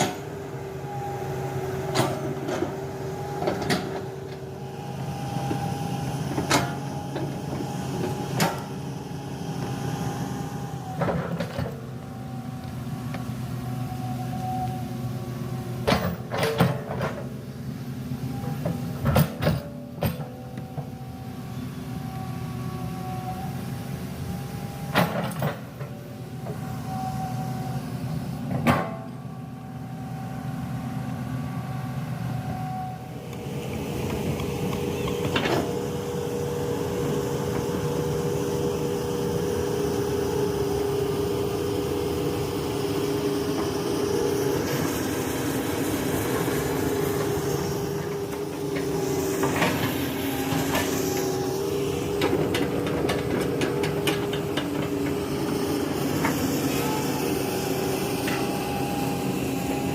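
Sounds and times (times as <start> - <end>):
diesel engine running: 0.0 - 59.9
hydraulic whine: 0.0 - 59.9.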